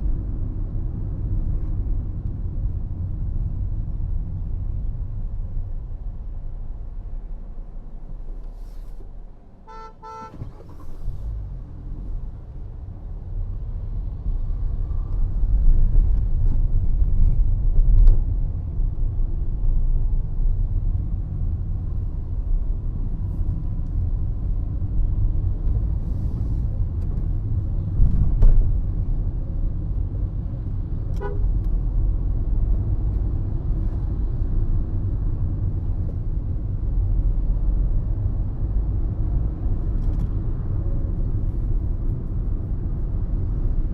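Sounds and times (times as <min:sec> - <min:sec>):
car engine and road rumble: 0:00.0 - 0:43.9
car horn toot: 0:09.7 - 0:10.6, 0:31.2 - 0:31.4.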